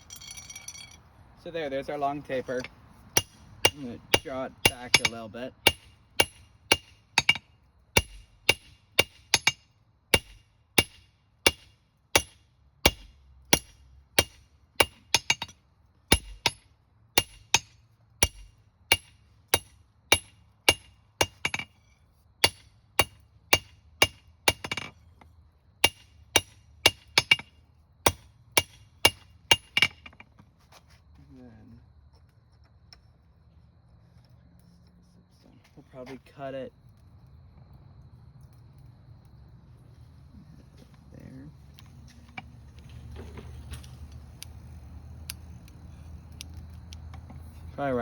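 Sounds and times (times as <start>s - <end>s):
hammer striking steel on anvil: 2.6s - 9.6s, 10.2s - 15.5s, 16.1s - 16.6s, 17.2s - 21.7s, 22.4s - 24.9s, 25.8s - 27.5s, 28.1s - 30.0s.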